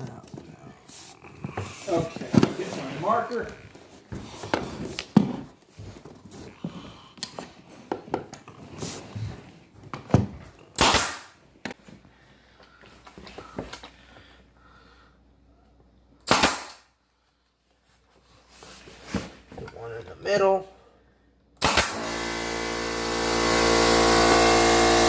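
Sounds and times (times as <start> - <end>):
nail gun firing: 10.8 - 11.3, 16.2 - 16.8, 21.6 - 25.0.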